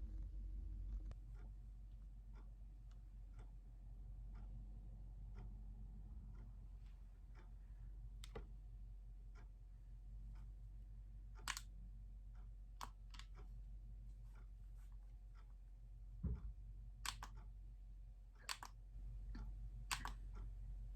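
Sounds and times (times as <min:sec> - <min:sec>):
low steady hum: 0:00.0 - 0:20.9
faint regular ticking: 0:00.9 - 0:20.9
sharp clicks: 0:11.4 - 0:11.8, 0:12.8 - 0:13.5, 0:17.0 - 0:17.5, 0:18.4 - 0:20.5.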